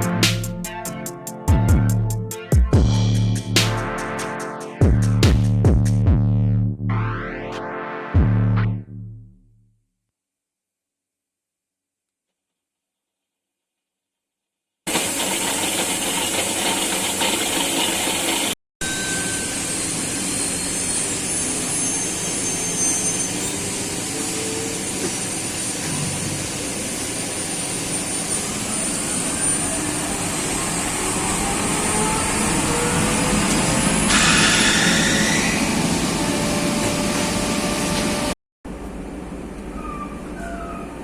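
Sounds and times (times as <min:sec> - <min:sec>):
printing press clattering: 0:14.9 - 0:18.6.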